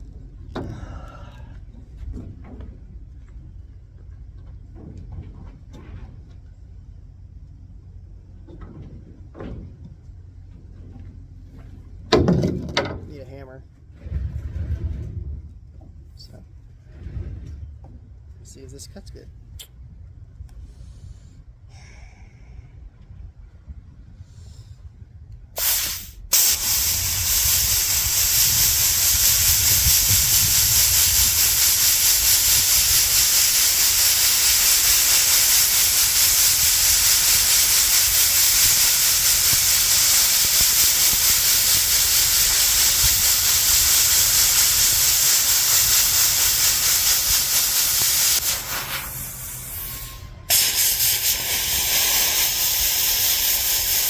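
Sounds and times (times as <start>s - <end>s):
plasma cutter hissing: 25.6s - 54.0s.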